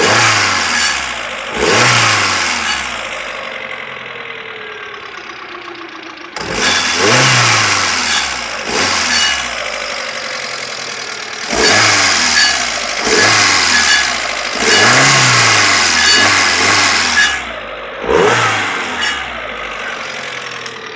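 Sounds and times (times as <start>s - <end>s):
car engine idling and revving: 0.0s - 20.9s.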